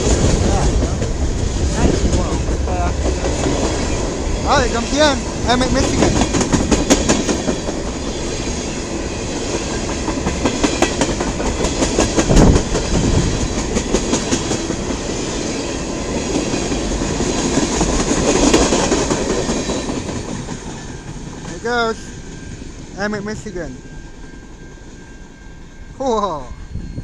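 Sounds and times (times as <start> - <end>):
steel wheels clattering over rail joints: 0.0 - 23.0
freight train cars rolling by: 0.0 - 27.0.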